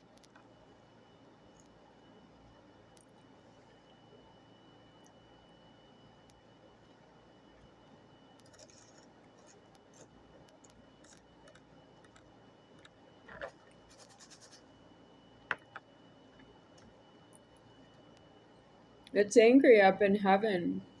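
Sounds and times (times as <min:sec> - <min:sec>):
faint scratching: 0:08.4 - 0:10.2, 0:13.3 - 0:14.8.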